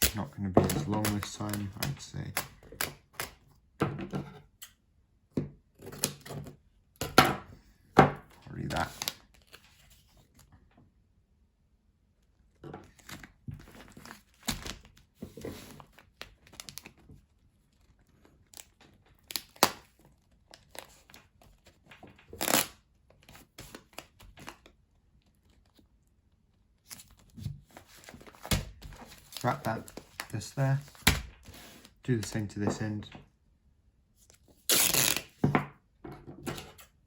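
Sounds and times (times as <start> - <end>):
duct tape tearing: 19.2 - 19.9, 22.4 - 22.8, 34.6 - 35.4.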